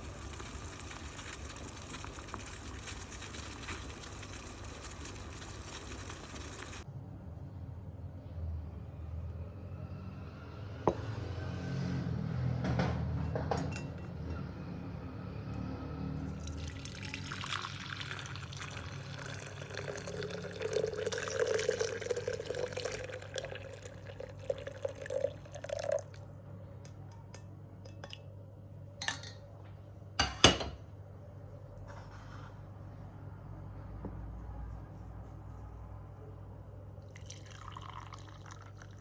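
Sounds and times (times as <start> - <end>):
liquid pouring into cup: 0.0 - 6.8, 16.3 - 26.3, 37.0 - 39.0.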